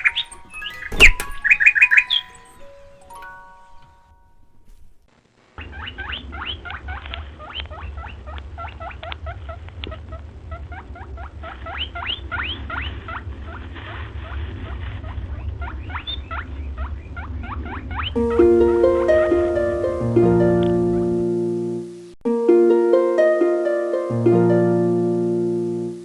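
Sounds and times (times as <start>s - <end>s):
small birds chirping: 0.0s - 4.1s.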